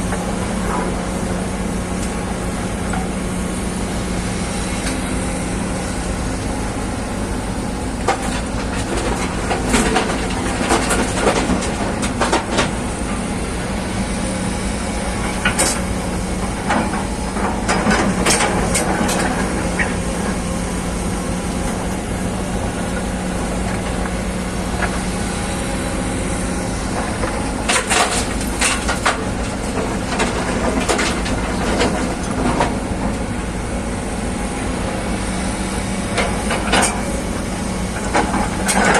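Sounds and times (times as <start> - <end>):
excavator diesel engine running: 0.0 - 38.9
clanking and knocking: 7.1 - 20.1.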